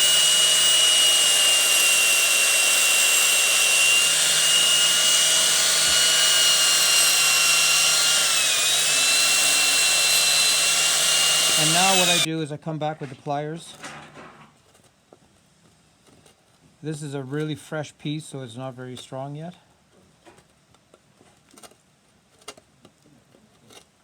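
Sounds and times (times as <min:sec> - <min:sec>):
angle grinder cutting tile: 0:00.0 - 0:12.3.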